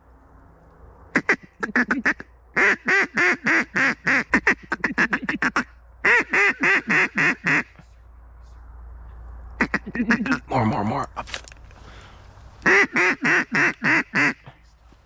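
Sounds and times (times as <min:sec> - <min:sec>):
duck quacking: 0:01.1 - 0:07.8, 0:09.6 - 0:10.9, 0:12.6 - 0:14.6.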